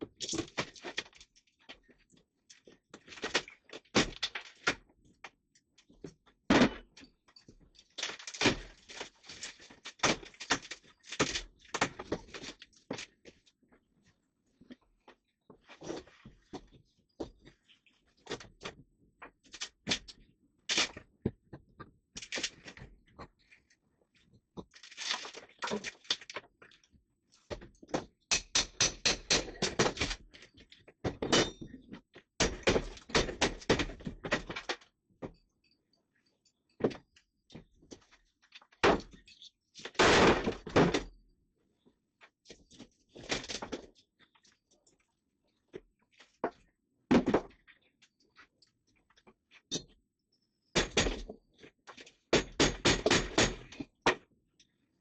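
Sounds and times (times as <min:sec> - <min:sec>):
plywood cracking and breaking: 0:07.9 - 0:13.1, 0:24.7 - 0:26.4.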